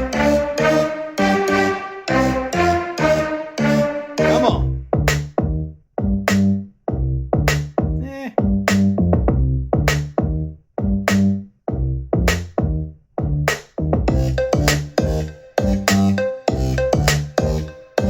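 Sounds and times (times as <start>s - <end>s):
electronic hip-hop beat: 0.0s - 6.5s, 7.4s - 18.0s.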